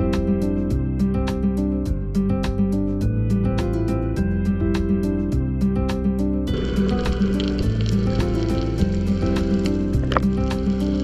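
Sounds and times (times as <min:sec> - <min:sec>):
background music with steady beat: 0:00.0 - 0:11.0.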